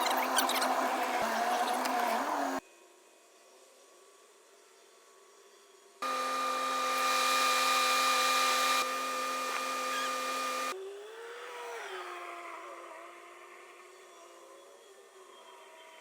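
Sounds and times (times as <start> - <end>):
quiet motor tone: 0.0 - 2.6, 6.0 - 10.8
machine whine and hiss: 6.0 - 10.8.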